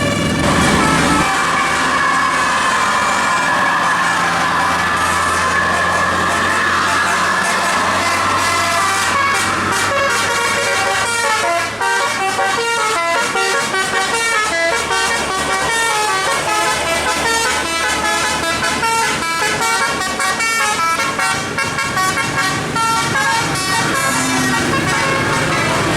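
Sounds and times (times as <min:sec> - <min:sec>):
low engine hum: 0:00.0 - 0:11.0
musical air horn tune: 0:00.0 - 0:25.9.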